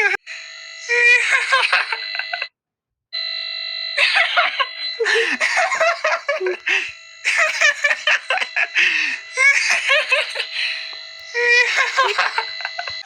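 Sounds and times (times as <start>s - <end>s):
high-pitched cartoonish voices: 0.0s - 2.1s
electronic alarm tone: 0.0s - 2.5s, 3.2s - 13.0s.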